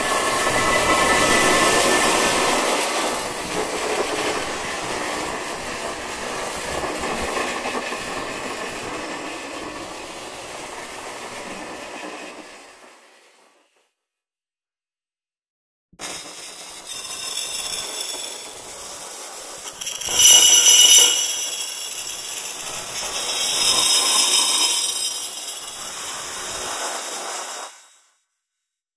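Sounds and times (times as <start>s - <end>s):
crackling electrical discharge hiss: 16.1s - 27.7s.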